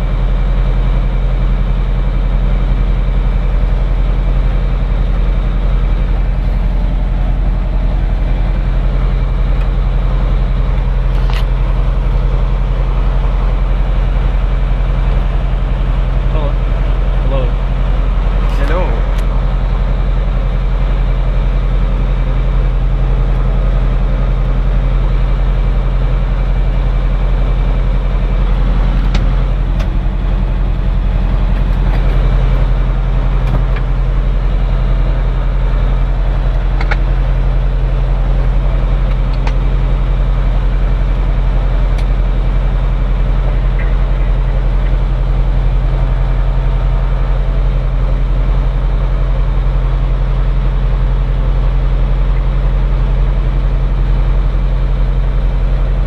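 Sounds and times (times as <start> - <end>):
aircraft engine and propeller running: 0.0 - 56.0.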